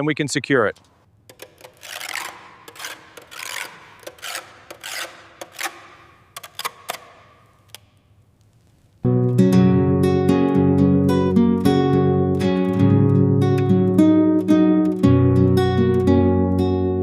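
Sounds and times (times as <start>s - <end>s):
sharp clicks: 0.7s - 8.6s
hand tool rasping on wood: 1.3s - 7.2s.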